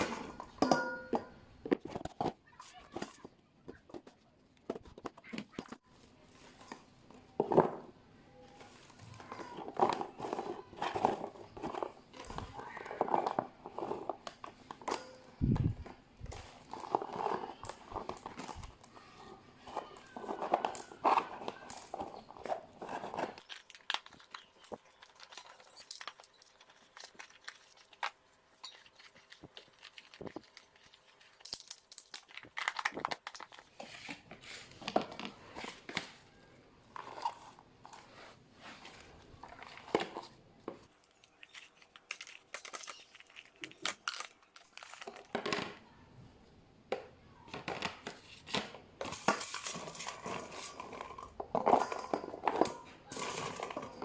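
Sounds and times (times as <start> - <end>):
plastic packaging crinkling: 8.5 - 45.8.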